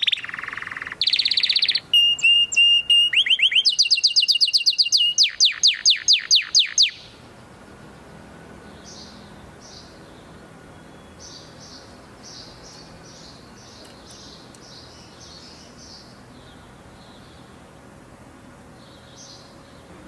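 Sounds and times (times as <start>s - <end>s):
canary chirping: 0.0s - 7.2s
background hiss: 0.0s - 20.0s.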